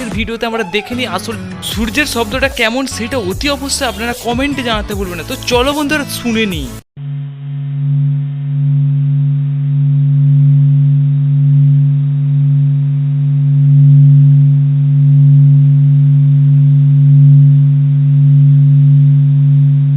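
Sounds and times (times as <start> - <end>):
low steady hum: 7.0 - 19.9.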